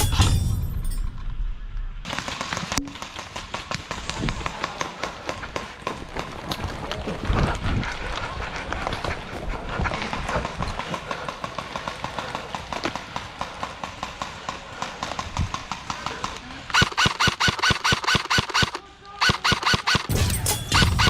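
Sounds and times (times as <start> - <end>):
airsoft gun rapid shots: 9.9 - 21.0.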